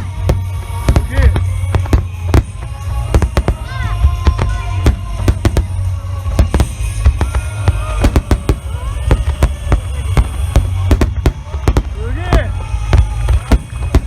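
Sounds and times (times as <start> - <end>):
deep rumble of explosions: 0.0 - 14.0
fireworks shell bursts: 0.0 - 14.0
music playing: 0.0 - 14.0.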